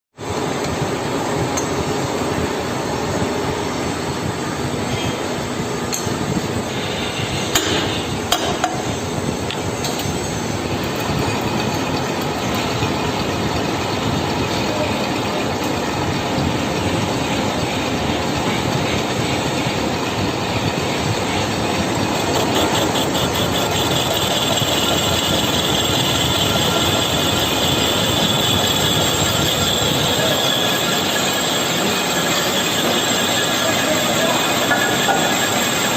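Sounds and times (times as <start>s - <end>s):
metal lathe cutting: 9.8s - 35.9s
high-pitched cutting squeal: 22.0s - 35.9s.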